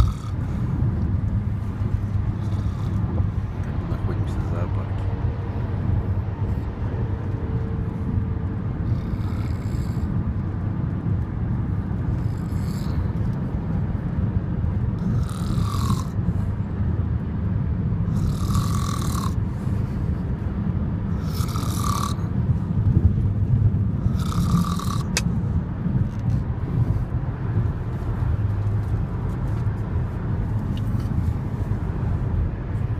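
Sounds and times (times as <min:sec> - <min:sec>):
heavy snoring: 0:00.0 - 0:00.8, 0:01.6 - 0:04.4, 0:08.8 - 0:10.3, 0:12.1 - 0:13.2, 0:15.0 - 0:16.3, 0:18.0 - 0:19.5, 0:21.1 - 0:22.4, 0:24.0 - 0:25.2
steady low rumble: 0:00.0 - 0:32.9.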